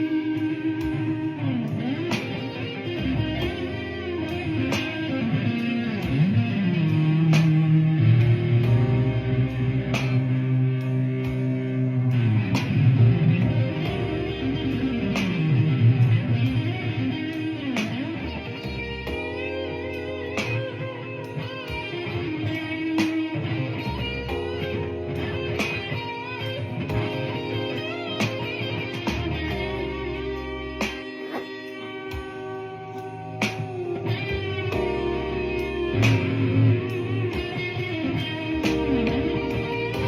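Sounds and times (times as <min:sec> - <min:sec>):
blues guitar with bent notes: 0:00.0 - 0:40.0
sharp beat hits: 0:30.8 - 0:34.9.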